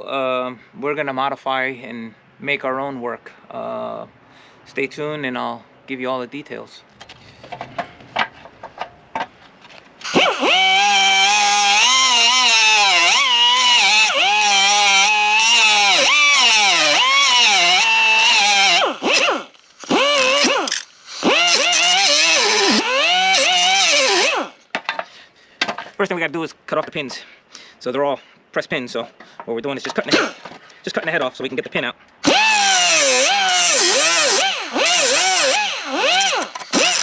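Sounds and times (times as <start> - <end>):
cut-off wheel cutting steel: 10.0 - 24.6, 32.2 - 37.0.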